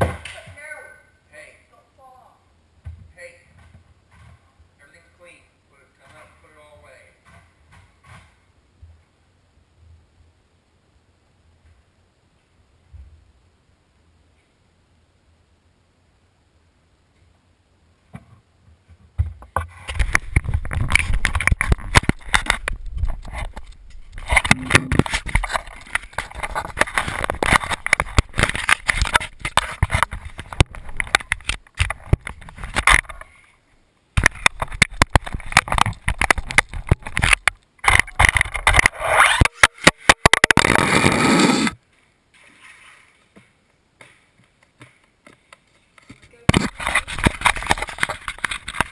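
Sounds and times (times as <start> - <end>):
tyres scraping on hard floor: 38.3 - 41.8.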